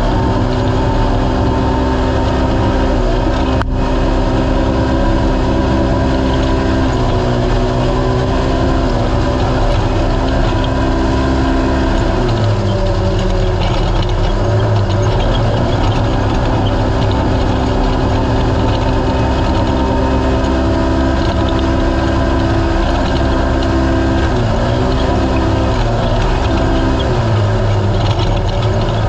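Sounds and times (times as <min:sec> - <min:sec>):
race engine running hard: 0:00.0 - 0:29.0.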